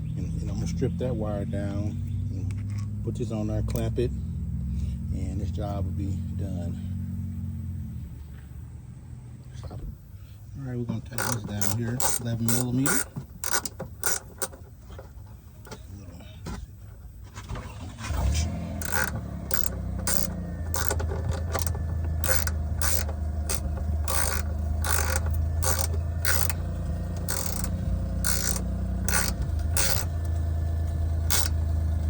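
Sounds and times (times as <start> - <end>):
steady low hum: 0.0 - 32.0
hand ratchet clicking: 11.1 - 14.8, 18.5 - 32.0.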